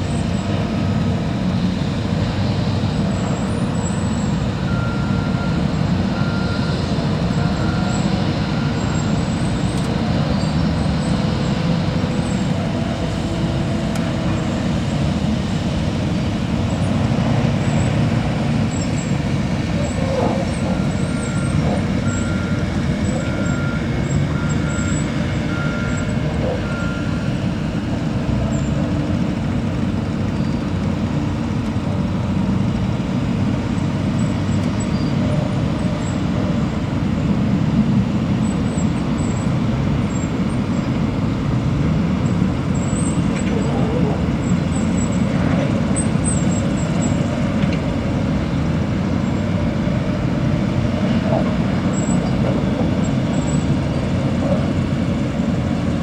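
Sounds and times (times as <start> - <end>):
heavy engine rumbling: 0.0 - 56.0
reversing beep: 4.6 - 10.6, 19.7 - 27.5.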